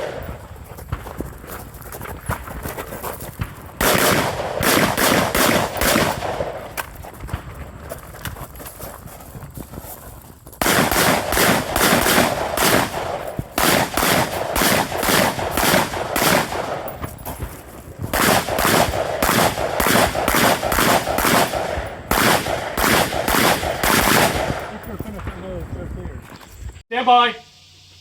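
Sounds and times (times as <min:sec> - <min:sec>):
rifle shots: 0:00.0 - 0:01.0, 0:03.4 - 0:07.4, 0:10.6 - 0:25.6.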